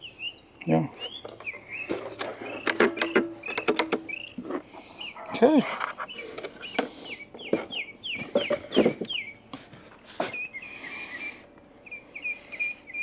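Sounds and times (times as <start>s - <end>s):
bird calling: 0.0s - 13.0s
scattered knocks: 1.2s - 9.2s.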